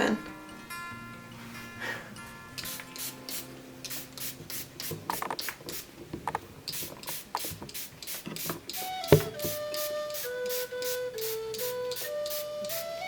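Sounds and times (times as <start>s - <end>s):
faint steady musical tone: 0.0s - 4.3s, 8.7s - 13.0s.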